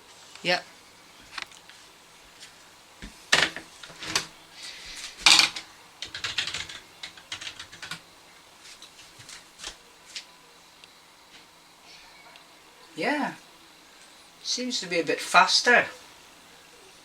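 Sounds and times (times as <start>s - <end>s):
computer keyboard typing: 5.3s - 8.0s.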